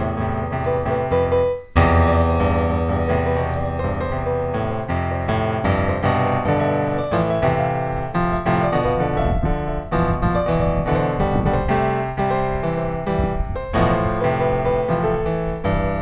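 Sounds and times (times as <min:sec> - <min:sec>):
piano chords: 0:00.0 - 0:16.0.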